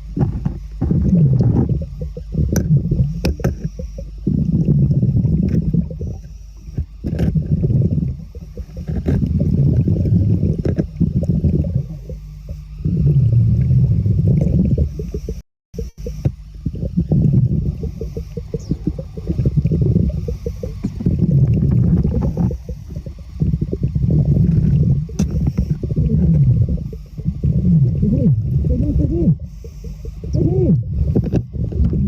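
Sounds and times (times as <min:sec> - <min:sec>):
exhaled bubbles gurgling: 0:00.0 - 0:32.0
diver breathing through regulator: 0:17.6 - 0:30.4.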